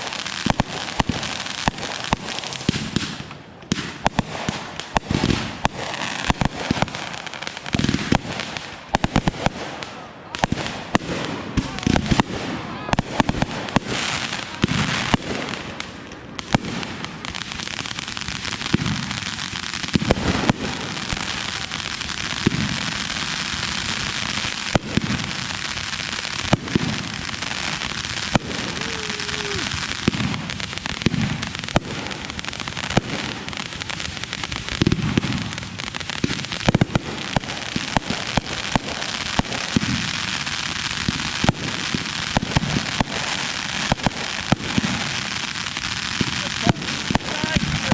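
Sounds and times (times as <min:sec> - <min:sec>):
fireworks crackling: 0:00.0 - 0:47.9
sharp firework bangs: 0:24.6 - 0:33.5, 0:34.5 - 0:47.9.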